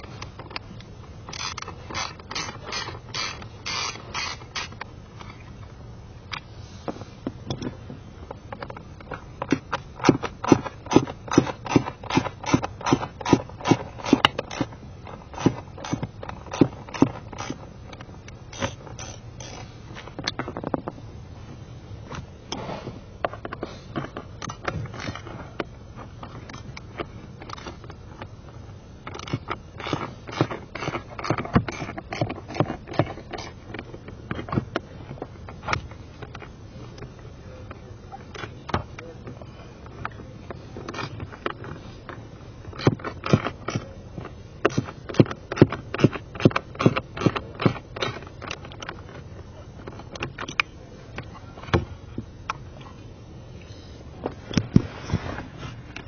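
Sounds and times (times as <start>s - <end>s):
sharp clicks and knocks: 0.0s - 5.6s, 6.3s - 21.0s, 23.2s - 37.1s, 37.7s - 52.6s
tools and parts clicking: 1.3s - 5.4s, 8.5s - 20.9s.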